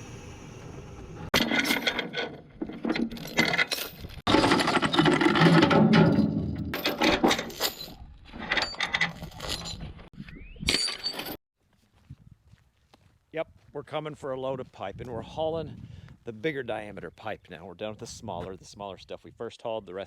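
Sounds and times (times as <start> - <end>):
metallic clinking and rattling: 1.4 - 10.1, 10.7 - 11.4.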